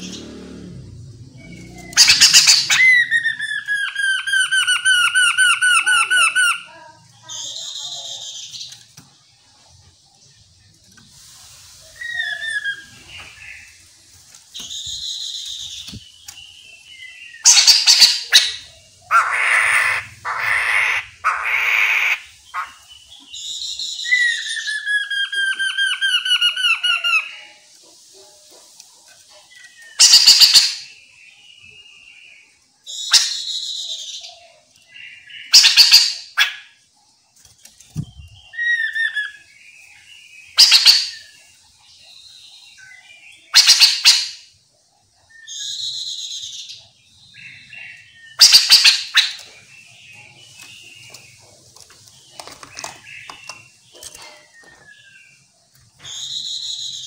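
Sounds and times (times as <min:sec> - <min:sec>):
harsh rasping bird chatter: 0:00.0 - 0:31.0, 0:35.0 - 0:36.9, 0:40.5 - 0:42.1, 0:45.5 - 0:57.0
falling whistled bird notes: 0:11.9 - 0:13.7, 0:56.0 - 0:57.0.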